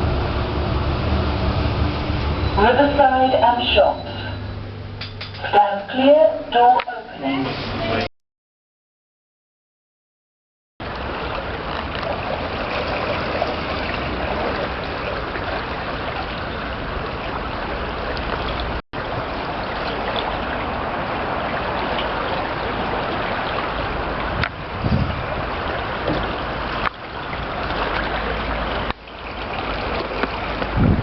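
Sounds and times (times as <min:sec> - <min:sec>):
low rumble: 0:00.0 - 0:04.9
flowing water rushing: 0:10.8 - 0:31.0.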